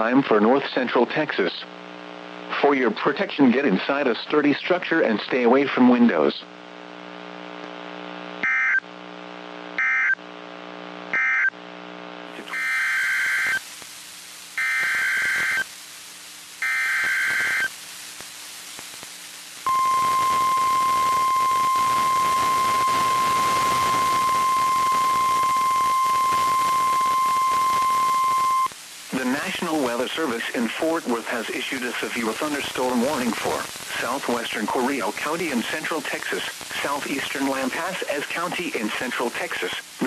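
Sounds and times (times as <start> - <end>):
steady warning alarm tone: 8.4 - 8.8, 9.8 - 10.2, 11.2 - 11.5, 19.7 - 28.7
digital data tone bursts: 19.7 - 28.7.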